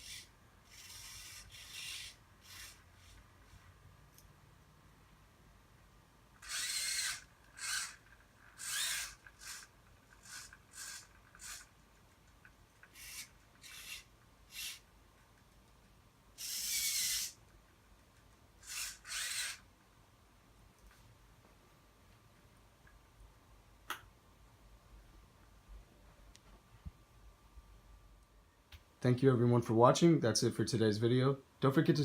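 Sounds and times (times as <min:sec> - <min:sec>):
servo motors whining: 0:00.0 - 0:03.2, 0:06.4 - 0:11.7, 0:12.9 - 0:14.8, 0:16.4 - 0:17.4, 0:18.6 - 0:19.6.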